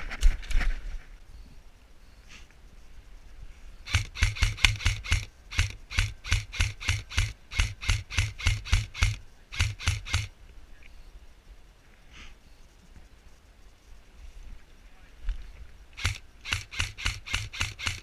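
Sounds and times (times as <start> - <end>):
airsoft rifle shots: 3.9 - 10.3, 16.0 - 18.0.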